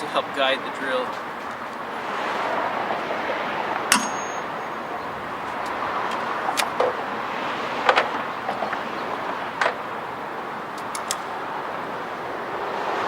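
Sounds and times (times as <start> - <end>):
steady background noise: 0.0 - 13.0
hand tool tapping on steel: 3.9 - 4.4.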